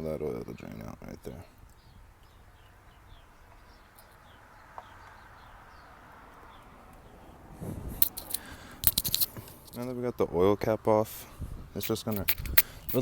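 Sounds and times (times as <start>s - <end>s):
faint bird chirps: 0.6s - 7.4s.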